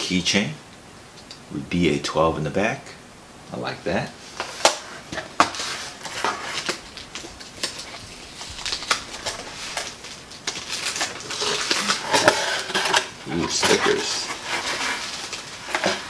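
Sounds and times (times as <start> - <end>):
papery rustling in cardboard box: 4.9 - 16.0
small items clicking and clinking: 6.0 - 16.0.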